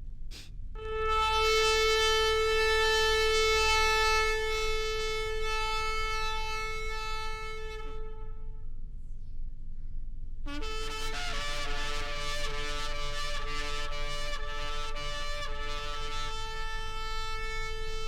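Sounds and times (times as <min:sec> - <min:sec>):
shofar blowing long note: 0:00.8 - 0:08.8, 0:10.4 - 0:18.0.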